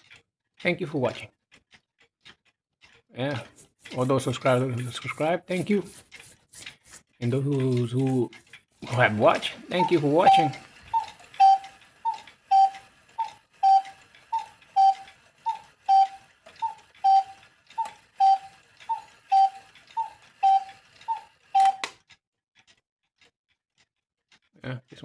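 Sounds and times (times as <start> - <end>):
clock click: 0.0 - 25.0
cuckoo clock call: 3.4 - 22.0.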